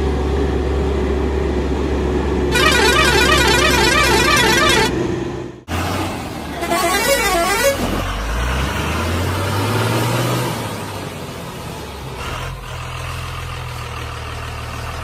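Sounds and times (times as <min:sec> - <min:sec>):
heavy vehicle engine running: 0:00.0 - 0:15.0
warbling horn-like tone: 0:02.5 - 0:05.0, 0:06.6 - 0:07.8.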